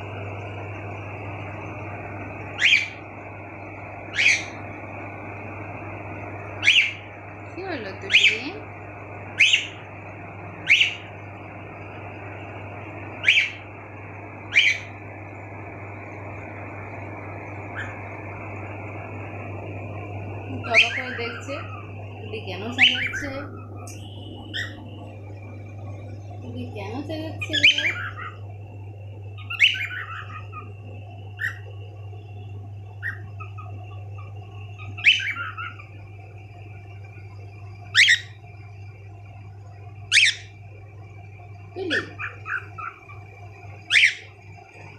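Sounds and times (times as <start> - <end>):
low hum: 0.0 - 44.9
cockatiel chirps: 2.6 - 3.0, 4.1 - 4.6, 6.6 - 7.1, 9.4 - 9.8, 10.6 - 11.1, 13.2 - 13.6, 14.5 - 15.0, 17.7 - 18.0, 27.4 - 28.4, 29.4 - 30.7, 33.0 - 35.9, 37.9 - 38.4, 40.1 - 40.5, 41.9 - 43.2, 43.9 - 44.3.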